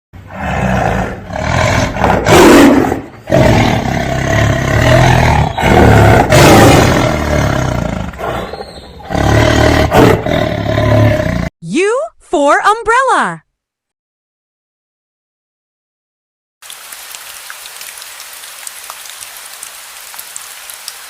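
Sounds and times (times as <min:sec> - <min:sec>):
tiger roaring and growling: 0:00.2 - 0:11.5.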